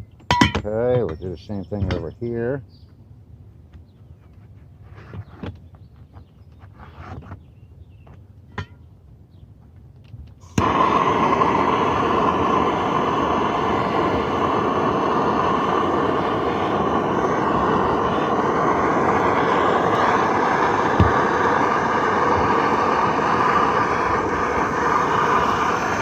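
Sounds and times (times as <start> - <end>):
roofing torch burning: 9.7 - 26.0.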